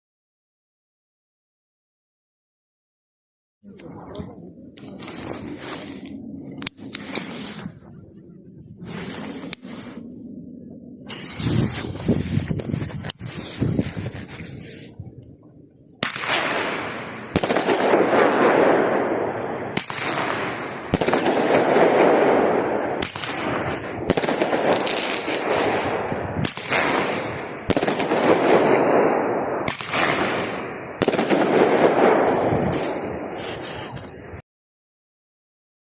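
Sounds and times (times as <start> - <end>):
noisy rush after each shot: 3.7 - 34.4
roman candle shots: 11.1 - 15.0, 16.0 - 34.4.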